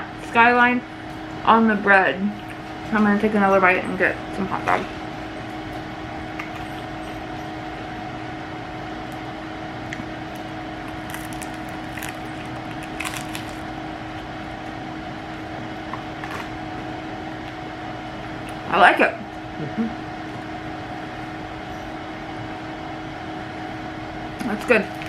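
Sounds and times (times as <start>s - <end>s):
steady machine hum: 0.0s - 25.0s
crunchy bread being chewed: 9.8s - 14.7s.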